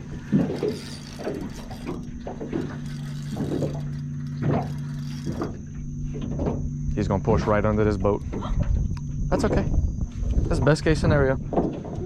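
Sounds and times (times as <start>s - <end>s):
boat motor humming: 0.0s - 12.0s
fishing reel clicking and ratcheting: 0.2s - 5.7s.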